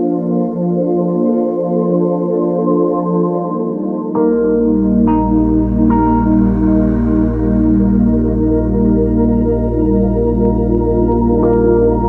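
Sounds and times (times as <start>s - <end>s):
ambient music with sustained chords: 0.0s - 12.0s
deep bass note: 4.7s - 12.0s.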